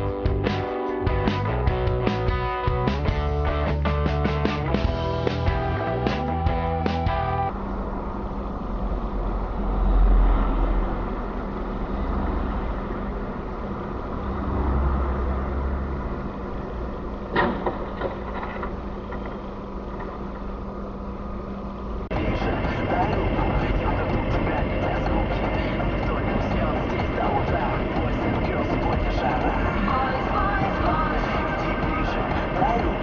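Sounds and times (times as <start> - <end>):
car road and engine rumble: 0.0 - 33.0.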